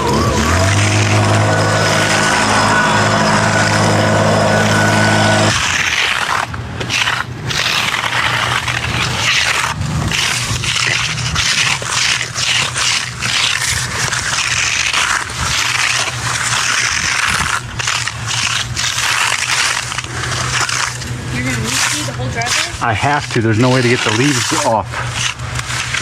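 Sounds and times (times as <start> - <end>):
low engine hum: 0.0 - 26.0
tool scraping wet concrete: 0.0 - 26.0.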